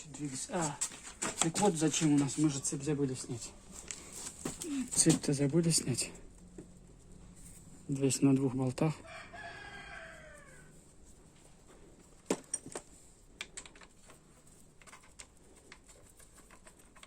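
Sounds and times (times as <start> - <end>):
rooster crowing: 9.0 - 10.8
sharp clicks and knocks: 12.3 - 14.2.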